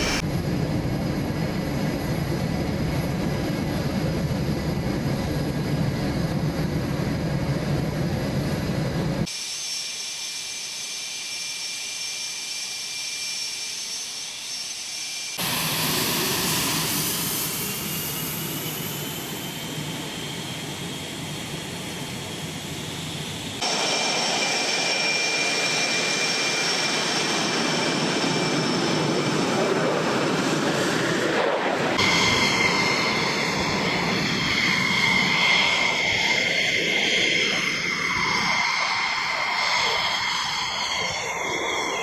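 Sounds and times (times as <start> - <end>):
jet engines roaring and whining: 0.0 - 42.0.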